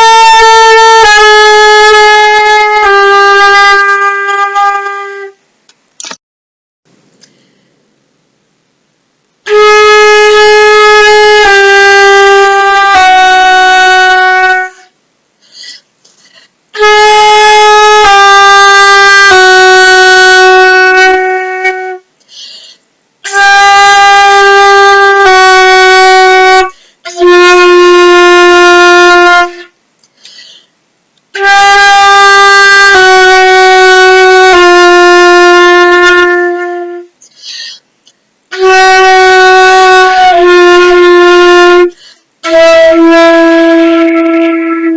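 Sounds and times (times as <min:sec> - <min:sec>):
flute playing long tones: 0:00.0 - 0:05.4, 0:09.5 - 0:14.9, 0:16.8 - 0:22.1, 0:23.3 - 0:29.7, 0:31.4 - 0:37.2, 0:38.5 - 0:44.9
person breathing: 0:07.2 - 0:07.9, 0:15.4 - 0:16.6, 0:22.2 - 0:22.9, 0:30.1 - 0:30.8, 0:37.2 - 0:37.9, 0:42.0 - 0:42.3.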